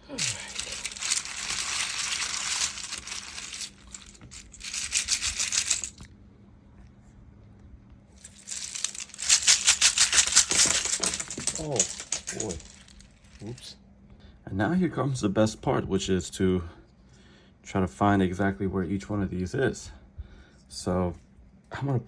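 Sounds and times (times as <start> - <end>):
plastic keycaps clattering: 0.0 - 6.1, 8.2 - 13.5
rapid run of clicks: 0.2 - 6.1, 8.2 - 12.9.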